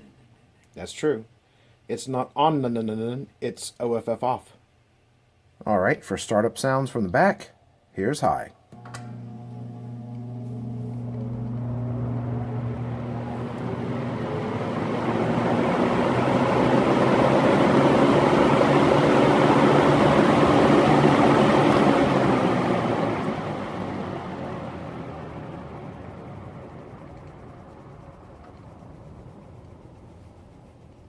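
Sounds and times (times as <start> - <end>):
box fan motor hum: 8.8 - 31.0
rush of air from fan: 10.4 - 31.0.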